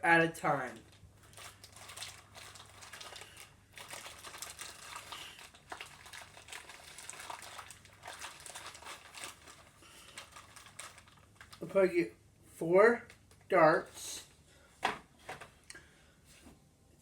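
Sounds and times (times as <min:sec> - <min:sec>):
packaging crinkling: 0:00.5 - 0:11.7.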